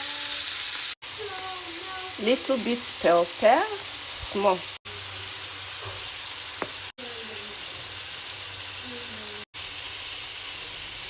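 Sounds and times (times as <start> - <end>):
food sizzling in a frying pan: 0.0 - 11.0.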